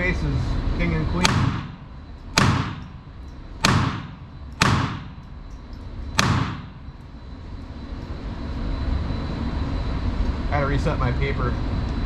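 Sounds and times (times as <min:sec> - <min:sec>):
pistol shots: 0:01.2 - 0:05.3, 0:06.2 - 0:06.9.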